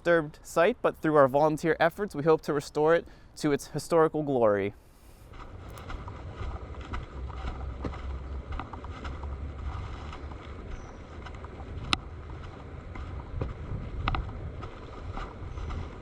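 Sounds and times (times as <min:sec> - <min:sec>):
wind buffeting microphone: 0:05.3 - 0:16.0.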